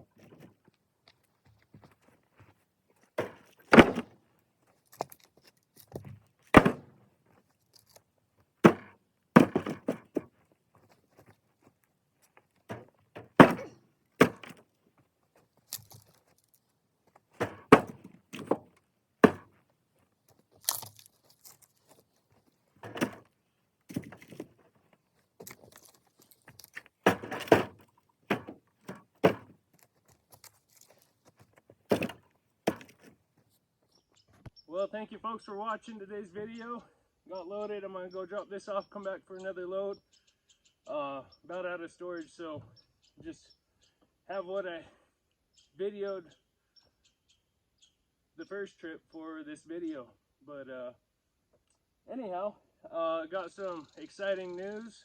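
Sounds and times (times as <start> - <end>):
firewood landing with thunks: 1.5 - 4.2, 4.9 - 8.0, 8.6 - 11.6, 12.6 - 14.7, 15.6 - 19.6, 20.3 - 33.2.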